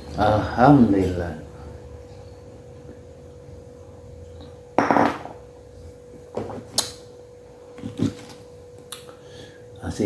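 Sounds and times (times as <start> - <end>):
faint steady hum: 0.0 - 10.0
dishes knocking and clicking: 4.8 - 5.4.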